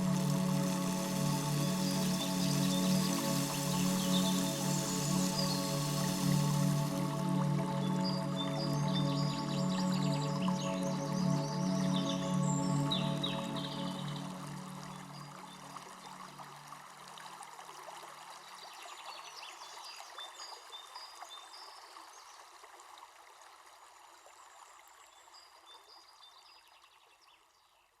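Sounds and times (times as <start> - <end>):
soft meditation music: 0.0 - 22.4
stream flowing: 0.0 - 25.9.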